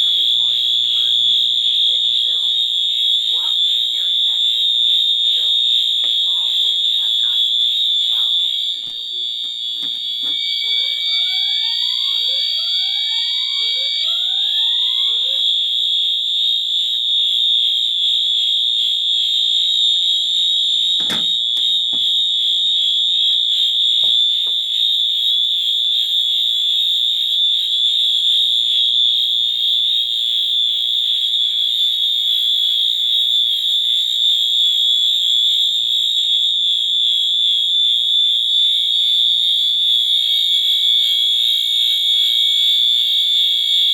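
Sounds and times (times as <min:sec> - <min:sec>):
rising alarm sweeps: 0:00.0 - 0:34.1
fire alarm continuous tone: 0:00.0 - 0:43.9.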